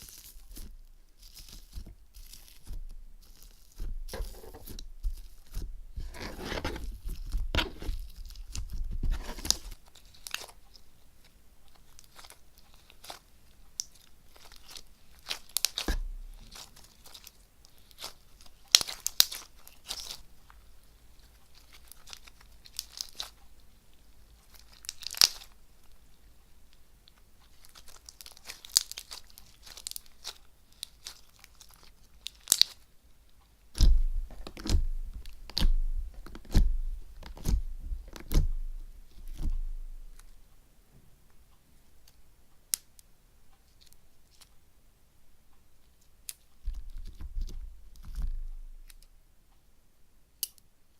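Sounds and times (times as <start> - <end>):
slime crackling and popping: 0.0 - 23.4, 24.3 - 26.0, 27.0 - 32.9, 33.7 - 40.3.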